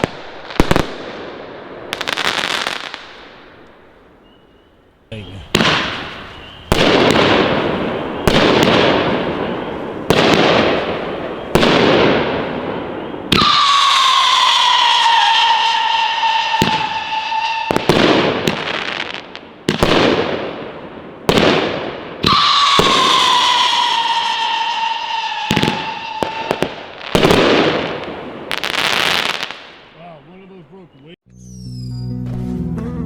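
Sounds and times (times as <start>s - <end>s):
firework bangs with hiss: 0.0s - 3.6s, 5.1s - 29.8s
howling firework whistle: 4.2s - 18.6s, 22.2s - 27.9s, 31.3s - 32.2s.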